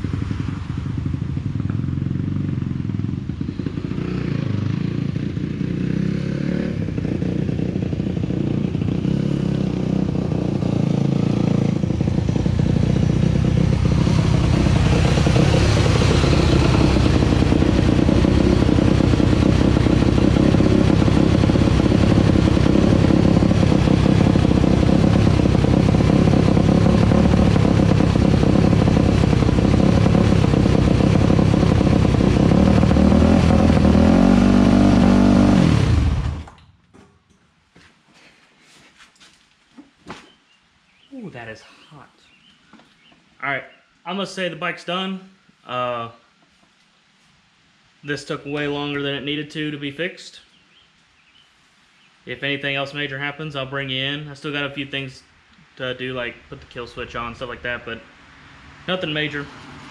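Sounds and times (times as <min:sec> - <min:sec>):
motorcycle engine running: 0:00.0 - 0:36.5.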